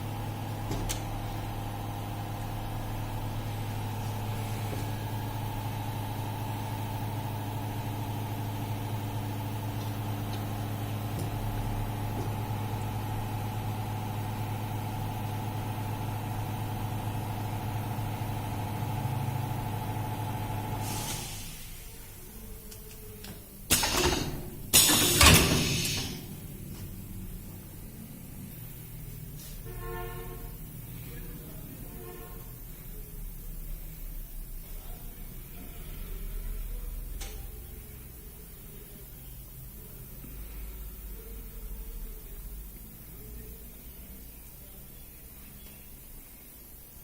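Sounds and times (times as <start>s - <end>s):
welding machine humming: 0.0s - 27.6s.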